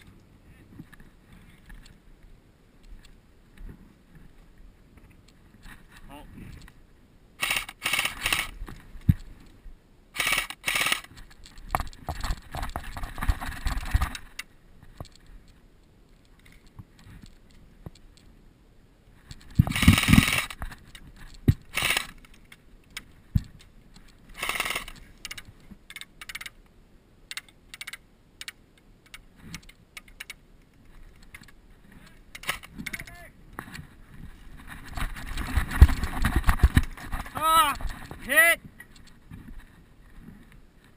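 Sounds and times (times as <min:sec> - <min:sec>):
gear rustling and rattling: 0:10.2 - 0:15.5, 0:19.2 - 0:26.6, 0:29.4 - 0:38.3.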